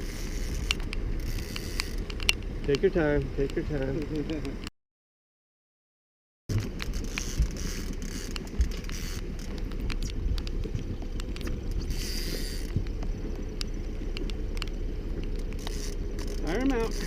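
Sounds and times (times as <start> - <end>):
boat motor running: 0.0 - 4.7, 6.5 - 17.0
small clicks: 6.5 - 17.0
water noise: 6.5 - 17.0
wind noise: 6.5 - 17.0.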